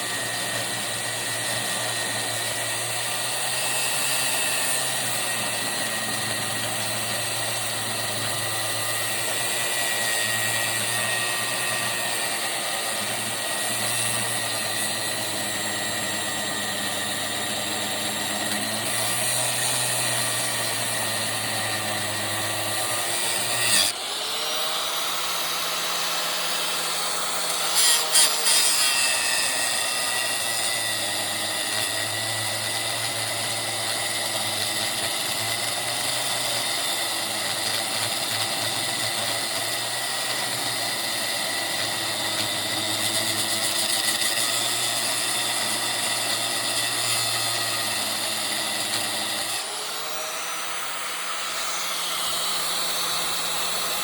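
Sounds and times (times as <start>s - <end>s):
angle grinder cutting metal: 0.0s - 54.0s.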